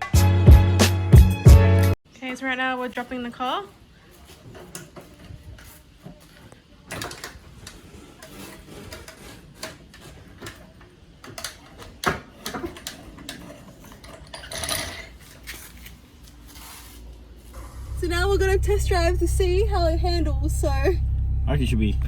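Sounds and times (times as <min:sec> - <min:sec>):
rustling: 0:02.8 - 0:19.2.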